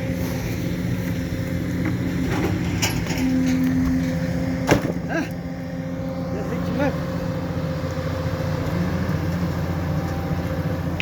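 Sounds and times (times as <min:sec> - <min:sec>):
excavator diesel engine running: 0:00.0 - 0:11.0
light metal clanks: 0:01.8 - 0:05.1.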